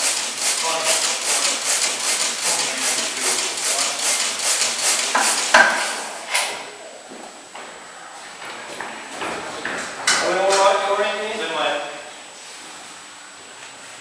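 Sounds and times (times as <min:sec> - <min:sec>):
gas engine hissing clatter: 0:00.0 - 0:06.1.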